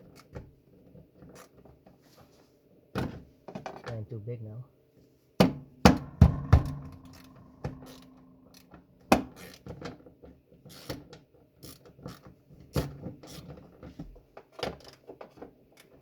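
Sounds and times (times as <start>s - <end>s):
sharp metal knocks: 5.4s - 8.7s
metallic ring: 6.0s - 8.5s.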